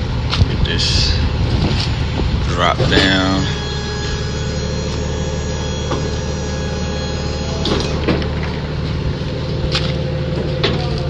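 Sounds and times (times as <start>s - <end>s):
truck machinery humming: 0.0s - 11.0s.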